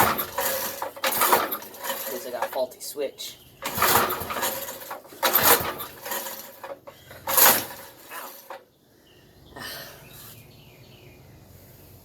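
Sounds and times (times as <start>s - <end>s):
scraping and clunking handling noises: 0.0s - 8.7s.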